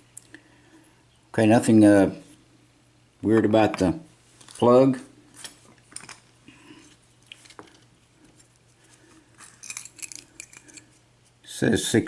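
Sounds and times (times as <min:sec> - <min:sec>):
small metal lock parts clicking: 0:09.4 - 0:10.9.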